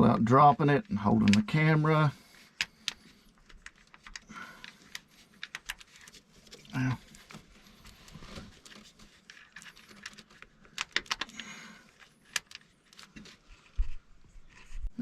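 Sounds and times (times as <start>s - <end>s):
small metallic clicks and rattles: 8.5s - 13.3s.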